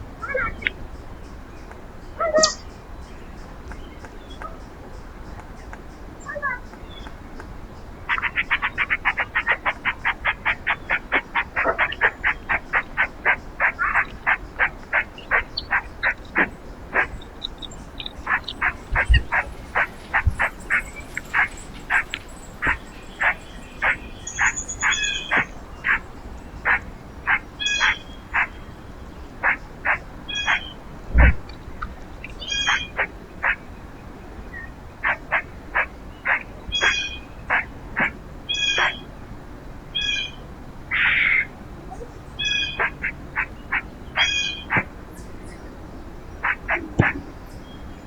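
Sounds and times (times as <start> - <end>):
bird chirps: 0.2 - 7.2, 8.1 - 33.7, 34.4 - 39.1, 40.0 - 45.8
animal calling in sharp notes: 10.2 - 26.0.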